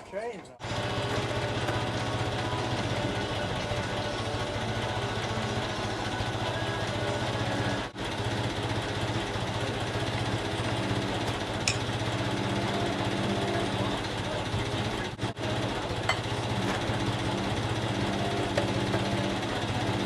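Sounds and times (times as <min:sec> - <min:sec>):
heavy equipment engine idling: 0:00.0 - 0:20.0.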